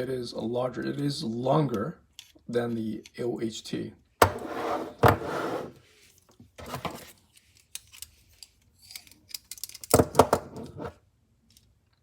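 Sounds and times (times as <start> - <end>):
metal tool scraping: 4.2 - 5.8.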